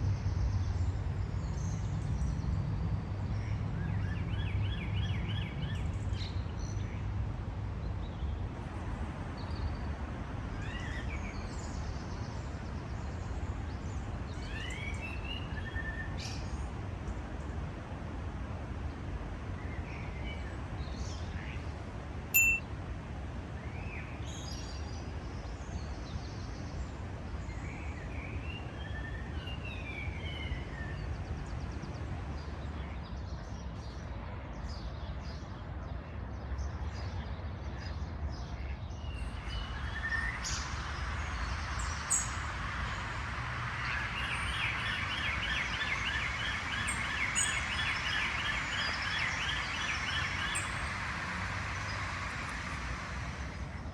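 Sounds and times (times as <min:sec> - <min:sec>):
low steady rumble: 0:50.5 - 0:53.9.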